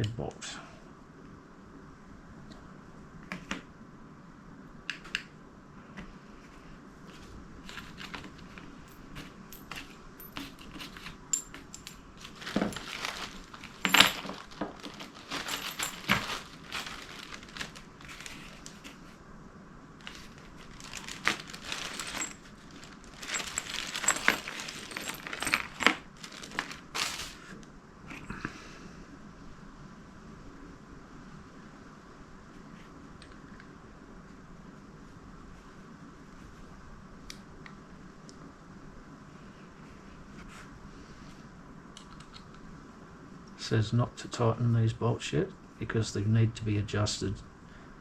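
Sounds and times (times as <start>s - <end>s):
metal tools clinking: 7.7s - 18.8s, 20.0s - 27.4s.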